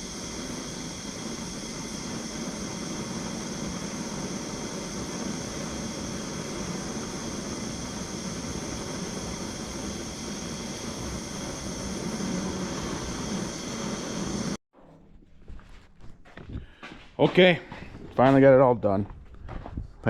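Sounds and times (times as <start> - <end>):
heat gun fan humming and hissing: 0.0 - 14.6.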